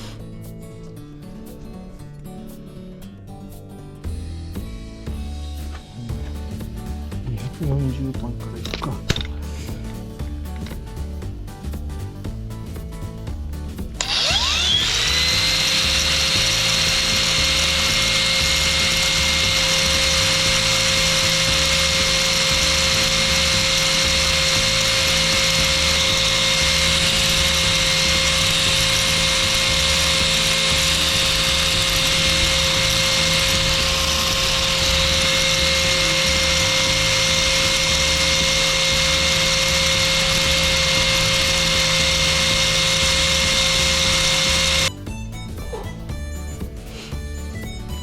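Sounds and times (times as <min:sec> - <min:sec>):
power sander whining and grinding: 0:00.0 - 0:00.2, 0:14.0 - 0:44.9.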